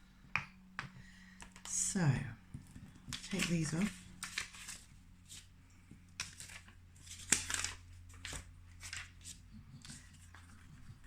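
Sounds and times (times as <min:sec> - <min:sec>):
sticky notes peeling off card: 0:03.1 - 0:05.5.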